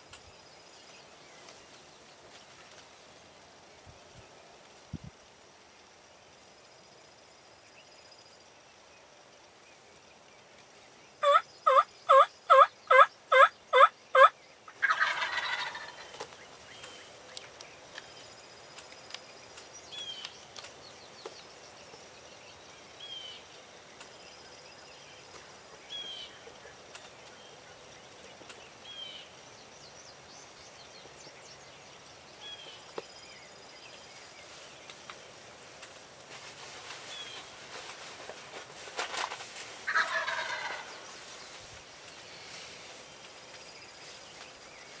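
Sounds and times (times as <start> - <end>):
turkey yelps: 11.2 - 16.0, 39.9 - 40.9
turkey gobble: 11.2 - 16.2, 39.9 - 41.0.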